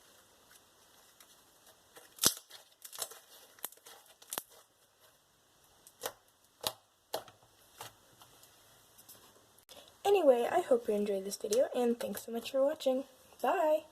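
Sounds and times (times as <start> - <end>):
slime popping and snapping: 2.2 - 4.5.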